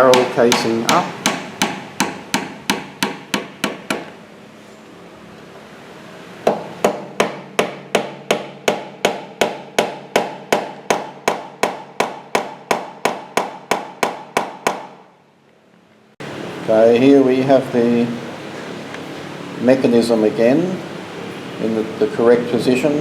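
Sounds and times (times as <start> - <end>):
hammer tapping on metal: 0.0 - 4.1.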